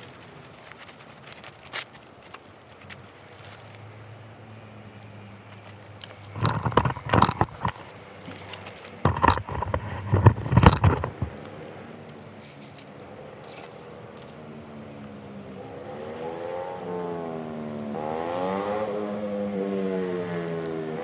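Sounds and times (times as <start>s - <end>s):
small hard objects clattering: 6.0s - 11.4s, 12.1s - 14.4s.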